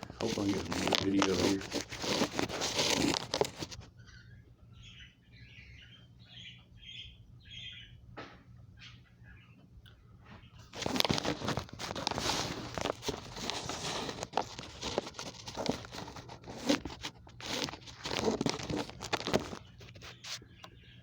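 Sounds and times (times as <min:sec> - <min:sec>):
loud rustling and crackling: 0:00.0 - 0:03.9, 0:10.7 - 0:20.4.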